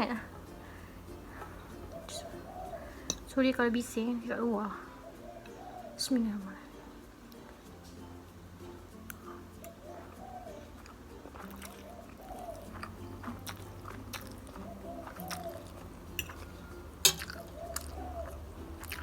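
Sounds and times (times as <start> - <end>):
chewing noodles: 0.0 - 3.4, 9.0 - 19.0
mouth and utensil clicks: 0.4 - 3.4, 9.0 - 19.0.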